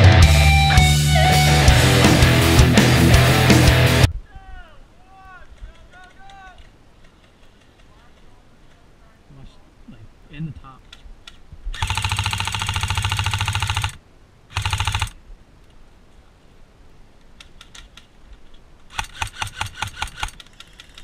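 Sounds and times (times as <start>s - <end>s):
airsoft rifle firing bursts: 11.8s - 15.2s, 18.9s - 20.8s.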